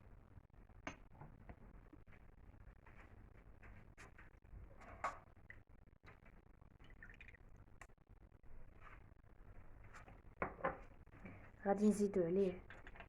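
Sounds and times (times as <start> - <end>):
lemon juice dripping: 6.8 - 7.9.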